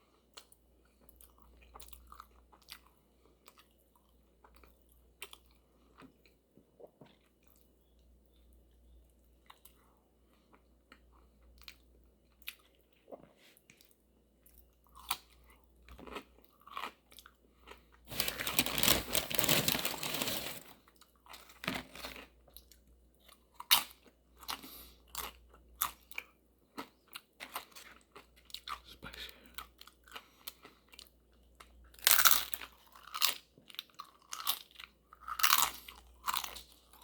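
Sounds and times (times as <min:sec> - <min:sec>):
crunchy chewing: 0:32.0 - 0:37.0.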